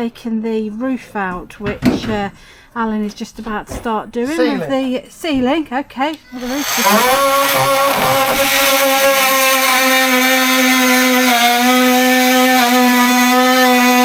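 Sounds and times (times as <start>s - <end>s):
handheld power tool running: 6.4s - 14.0s.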